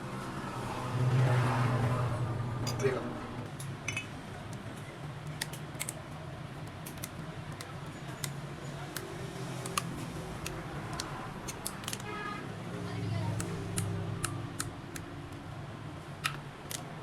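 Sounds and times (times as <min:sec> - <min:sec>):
low hum: 0:00.0 - 0:04.0.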